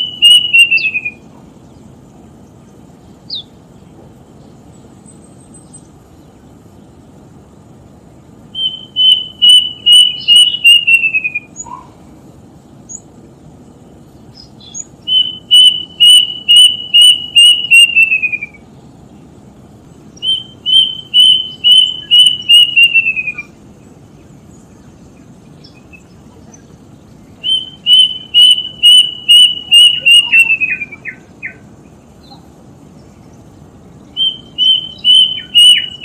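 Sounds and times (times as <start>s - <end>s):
bird whistling clear notes: 0.0s - 1.2s, 8.6s - 11.9s, 14.6s - 18.6s, 27.4s - 31.6s, 34.2s - 36.0s.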